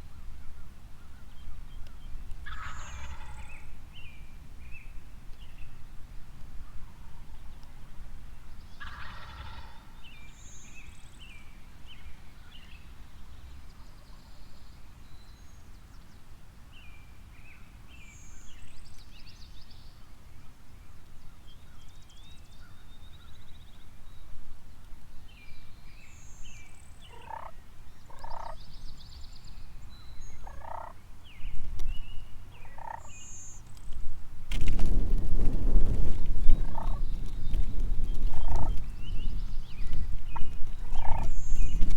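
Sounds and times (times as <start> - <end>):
turkey gobbling: 2.4 - 3.5, 8.8 - 9.9, 27.1 - 28.6, 30.4 - 31.0, 32.6 - 33.1, 36.6 - 37.0, 38.4 - 38.8, 40.4 - 41.3
small birds chirping: 21.0 - 34.1, 36.1 - 41.9
low wind rumble: 27.9 - 41.9.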